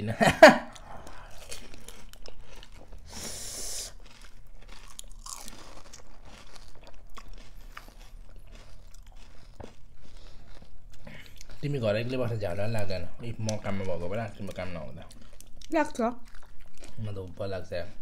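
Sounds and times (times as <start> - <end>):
crunchy food chewing: 0.6 - 18.0.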